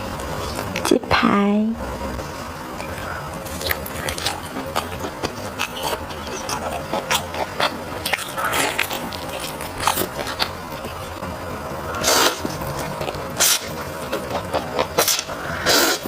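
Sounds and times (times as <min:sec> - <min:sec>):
chewing with mouth clicks: 0:02.8 - 0:11.2, 0:11.9 - 0:16.0.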